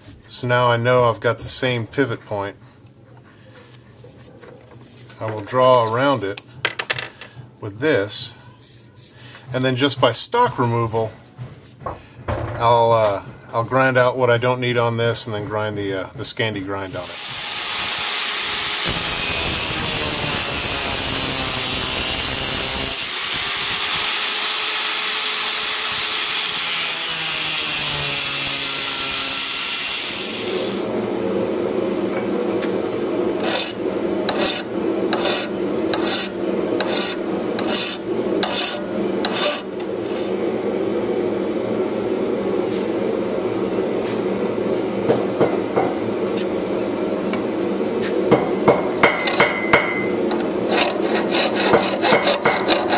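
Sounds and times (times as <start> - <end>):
power grinder whining on steel: 17.0 - 30.9, 33.4 - 40.4, 49.1 - 52.9
regular working strokes: 33.4 - 40.4, 49.1 - 52.9.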